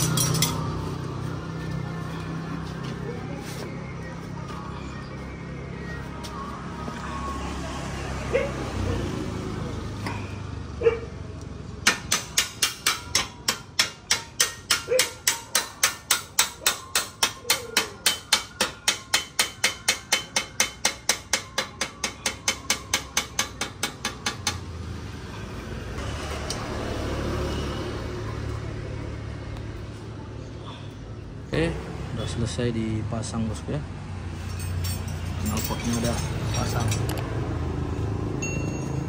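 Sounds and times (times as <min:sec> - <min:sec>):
rapid hammer strikes: 0:11.8 - 0:24.6.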